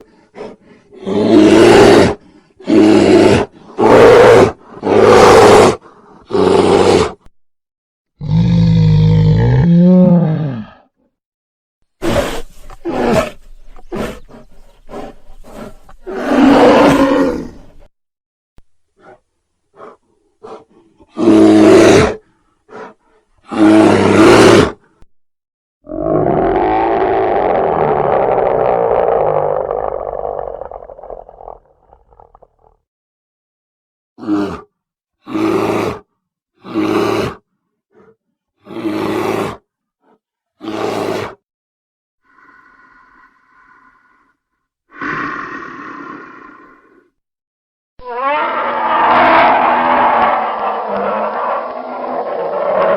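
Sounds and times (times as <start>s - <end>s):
bear roaring: 0.1s - 7.2s, 8.2s - 10.9s, 12.0s - 17.9s, 19.8s - 24.8s, 25.9s - 32.8s, 34.2s - 34.7s, 42.3s - 47.1s, 48.0s - 52.9s.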